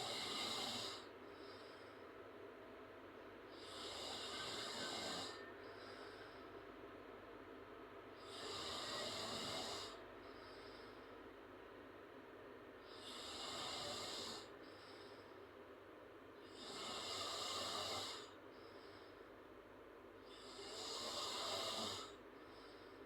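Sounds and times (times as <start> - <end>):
girl snoring loudly: 0.0 - 1.1, 3.6 - 5.4, 8.3 - 10.0, 13.0 - 14.5, 16.6 - 18.3, 20.4 - 22.1
soft breathing: 0.0 - 2.4, 3.5 - 6.8, 8.2 - 11.5, 12.8 - 15.7, 16.4 - 19.6, 20.2 - 23.0.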